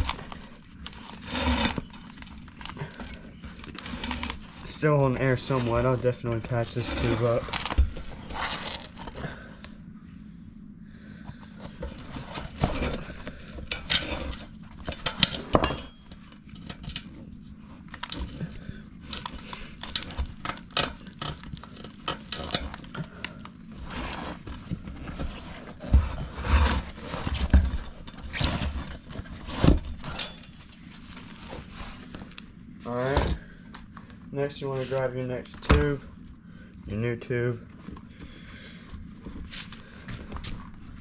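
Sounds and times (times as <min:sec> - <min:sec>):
metal tools clinking: 0:00.1 - 0:09.5, 0:12.0 - 0:17.2, 0:17.9 - 0:23.1, 0:27.0 - 0:30.8.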